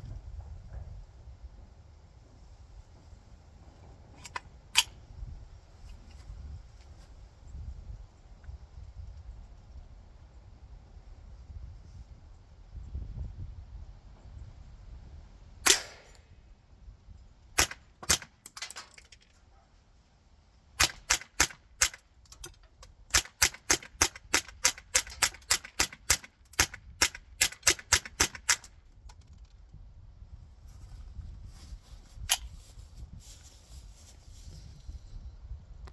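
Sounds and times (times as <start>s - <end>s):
suppressed rifle shots: 15.6s - 16.3s, 17.6s - 19.2s, 20.8s - 22.4s, 23.1s - 28.7s.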